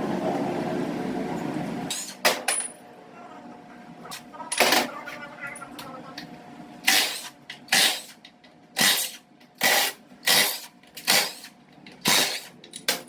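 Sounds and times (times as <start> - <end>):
faint background hum: 0.0 - 13.0
compressed air tool bursts: 6.8 - 8.1, 8.8 - 12.5.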